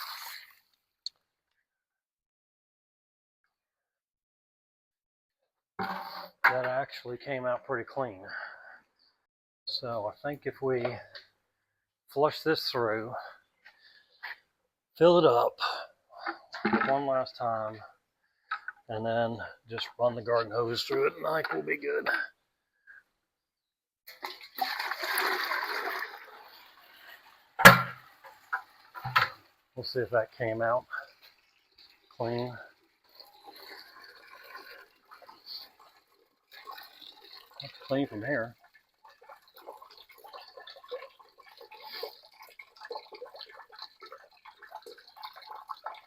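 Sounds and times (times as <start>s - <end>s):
water splashing and pouring: 0.0s - 0.8s, 18.6s - 22.3s, 24.1s - 46.0s
sharp clunk: 27.6s - 28.0s.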